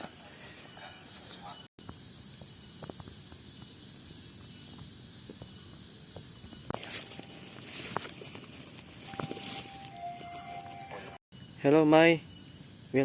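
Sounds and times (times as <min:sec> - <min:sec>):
high-pitched insect drone: 0:00.0 - 0:13.0
footsteps: 0:06.7 - 0:11.2.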